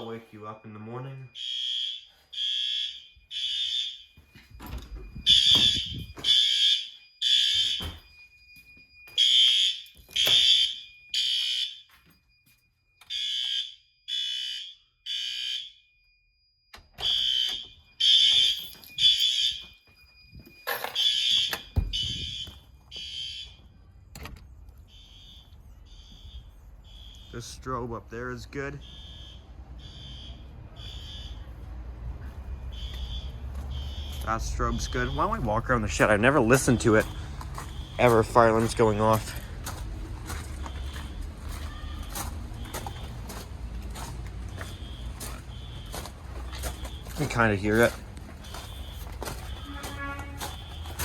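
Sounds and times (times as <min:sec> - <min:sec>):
fire alarm horn blasts: 0:00.0 - 0:23.9, 0:24.5 - 0:51.0.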